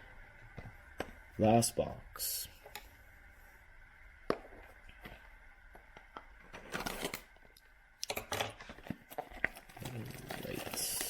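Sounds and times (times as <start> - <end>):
cards rustling: 8.6 - 11.0.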